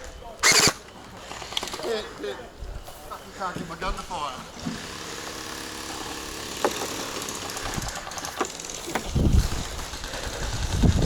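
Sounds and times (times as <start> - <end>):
sharp clicks: 0.4 - 0.9.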